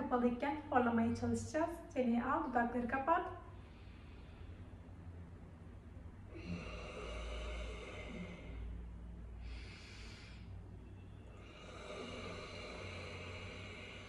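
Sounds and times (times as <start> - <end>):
rush of breath: 3.4 - 5.1, 6.3 - 14.0
person snoring: 6.3 - 8.7, 11.4 - 14.0.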